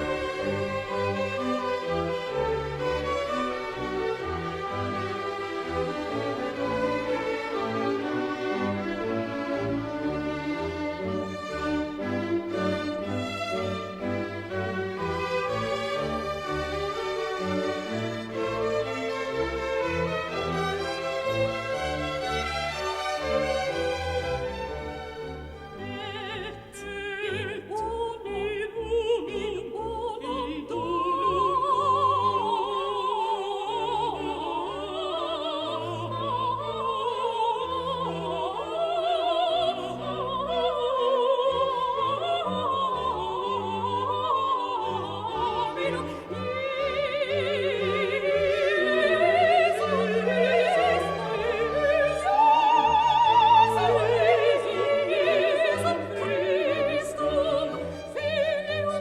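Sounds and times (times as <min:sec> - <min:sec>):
operatic singing: 0:00.0 - 0:59.0
orchestral accompaniment: 0:00.0 - 0:59.0.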